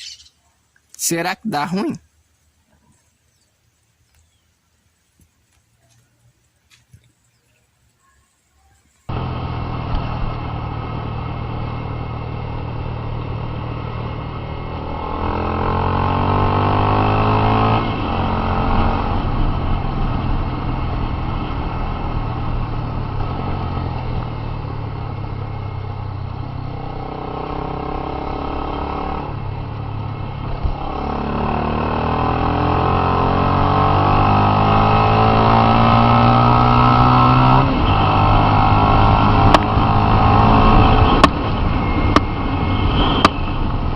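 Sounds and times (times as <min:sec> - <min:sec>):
motorcycle engine revving: 0:09.1 - 0:43.9.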